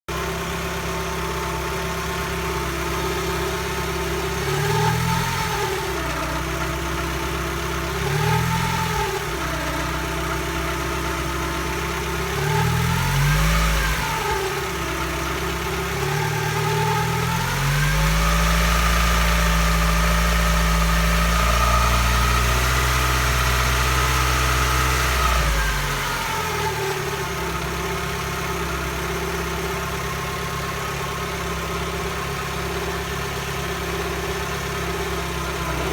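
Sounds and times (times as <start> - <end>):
car engine revving: 34.8 - 35.9
turbo whine: 35.5 - 35.9.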